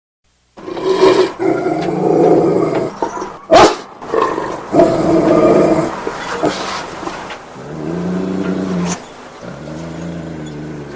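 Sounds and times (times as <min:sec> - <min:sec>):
dog growling: 0:00.6 - 0:10.9
dog barking: 0:02.8 - 0:06.8.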